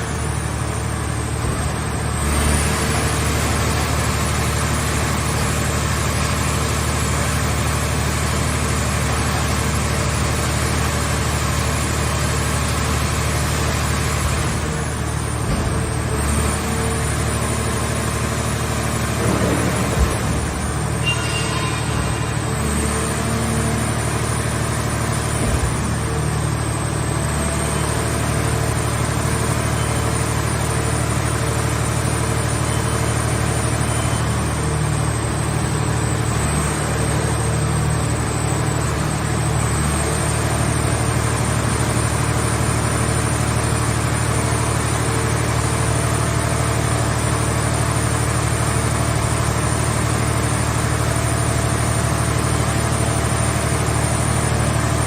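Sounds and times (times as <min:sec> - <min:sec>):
machine power unit humming: 0:00.0 - 0:32.0
high whine: 0:19.2 - 0:25.0.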